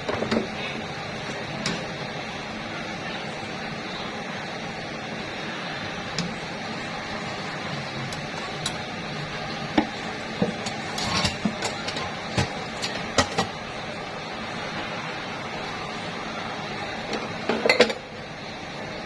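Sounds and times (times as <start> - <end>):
steady background hiss: 0.0 - 19.0
dishes and utensils clinking: 9.8 - 13.6, 17.5 - 18.0.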